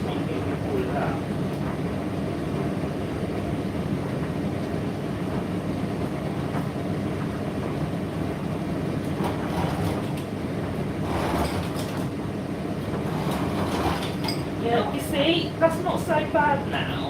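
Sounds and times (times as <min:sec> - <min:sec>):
tumble dryer rumbling: 0:00.0 - 0:17.0.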